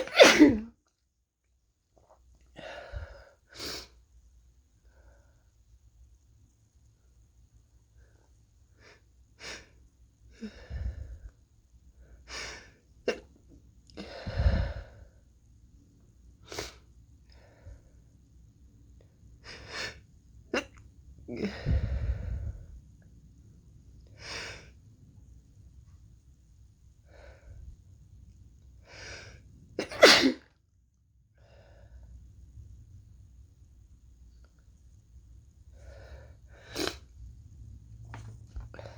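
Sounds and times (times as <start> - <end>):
person sneezing: 0.0 - 0.7, 29.8 - 30.4
person breathing in: 21.4 - 22.7.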